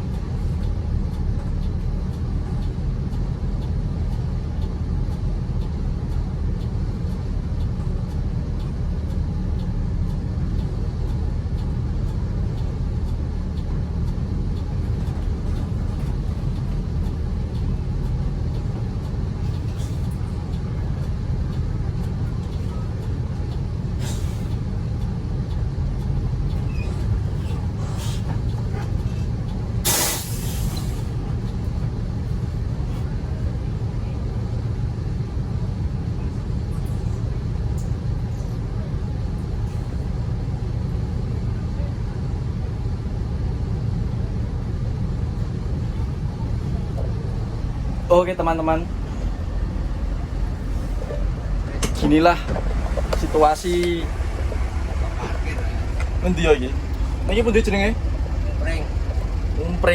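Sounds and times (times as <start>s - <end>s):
faint regular ticking: 0.0s - 32.5s, 47.7s - 59.9s
vehicle interior rumble: 0.0s - 59.9s
air-brake hiss: 24.0s - 24.6s, 26.8s - 28.3s, 29.8s - 31.2s.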